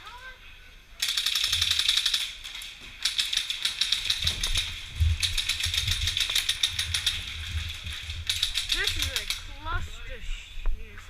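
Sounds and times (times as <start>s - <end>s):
airsoft guns firing bursts: 1.0s - 9.7s.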